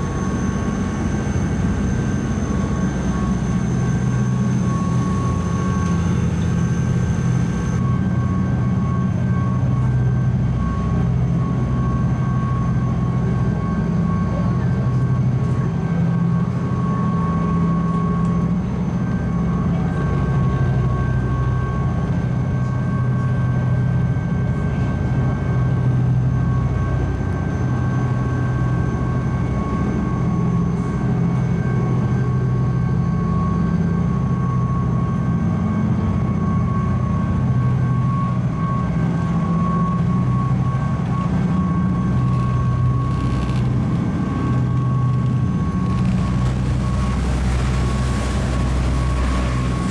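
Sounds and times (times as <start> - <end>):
whining machinery tones: 0.0 - 14.4, 33.2 - 49.9
ferry engine drone: 0.0 - 49.9.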